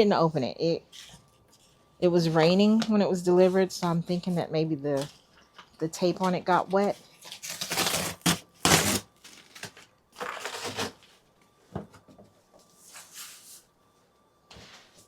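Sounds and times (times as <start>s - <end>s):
packing tape tearing: 7.2s - 11.1s.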